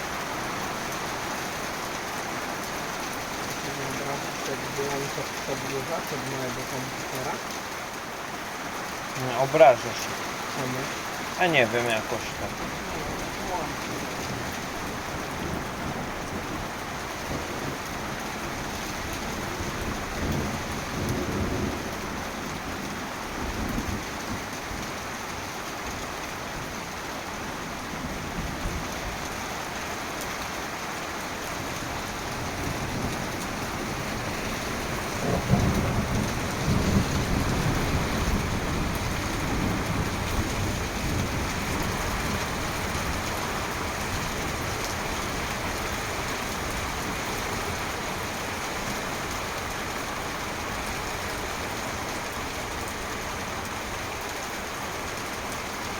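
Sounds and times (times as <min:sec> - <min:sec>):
heavy rain falling: 0:00.0 - 0:55.9
thunder rumbling: 0:10.6 - 0:22.3, 0:31.6 - 0:49.0.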